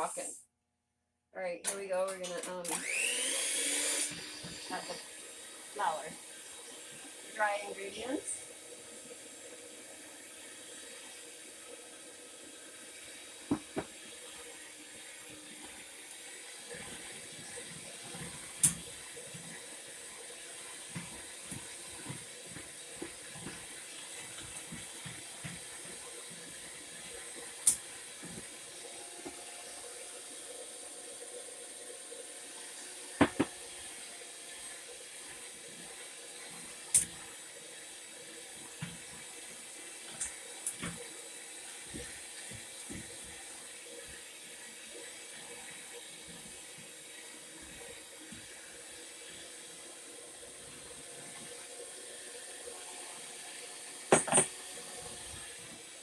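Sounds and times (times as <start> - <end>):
dough stirred in a bowl: 16.7 - 28.6.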